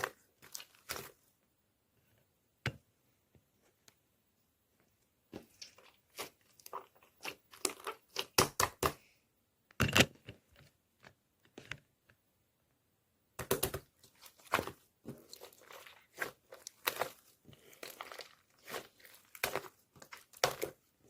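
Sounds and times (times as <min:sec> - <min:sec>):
slime squishing and popping: 0:05.4 - 0:09.0, 0:13.4 - 0:20.9.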